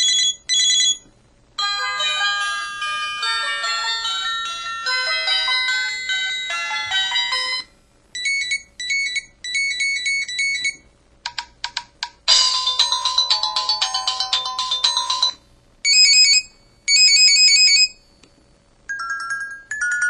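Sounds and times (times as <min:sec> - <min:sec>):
polyphonic ringtone melody: 0:01.6 - 0:10.6, 0:12.3 - 0:17.9, 0:18.9 - 0:20.0.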